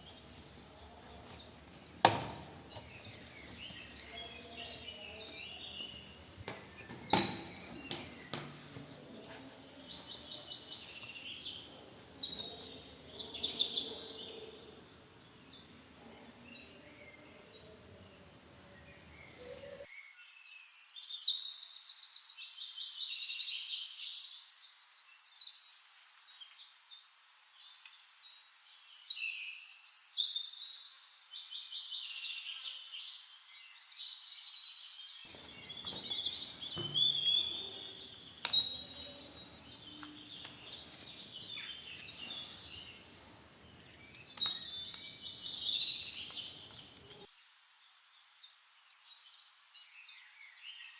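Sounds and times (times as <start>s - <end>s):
birds chirping and trilling: 0.0s - 19.8s, 35.3s - 47.3s.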